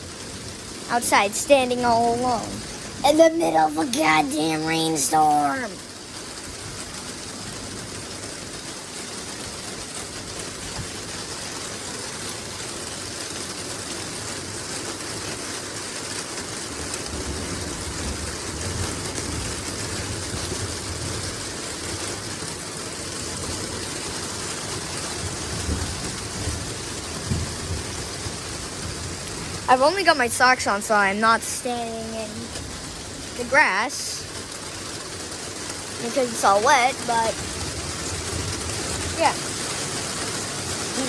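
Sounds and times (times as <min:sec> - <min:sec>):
heavy rain falling: 0:00.0 - 0:41.0.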